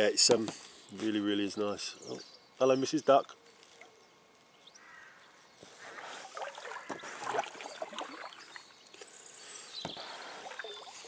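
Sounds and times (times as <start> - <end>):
kayak paddle splashing in water: 5.8 - 8.7, 10.2 - 11.0
water dripping: 6.3 - 9.1.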